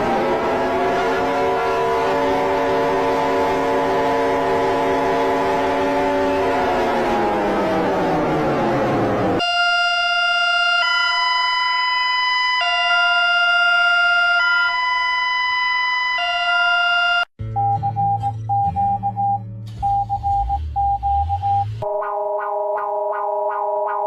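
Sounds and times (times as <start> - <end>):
low synth drone: 0.0 - 9.4
emergency alert alarm tones: 0.0 - 24.0
pulsing electronic beep: 17.1 - 24.0.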